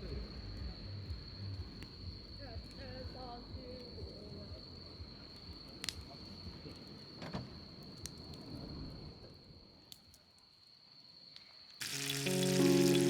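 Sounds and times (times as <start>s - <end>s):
insect calling high-pitched tone: 11.8s - 13.0s.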